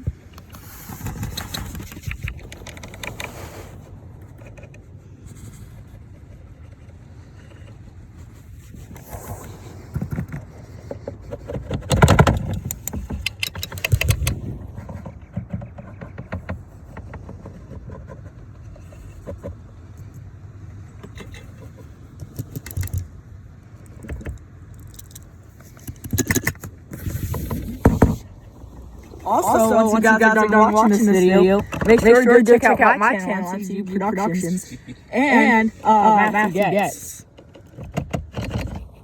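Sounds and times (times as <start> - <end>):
tools and metal parts clinking: 12.4 - 14.3.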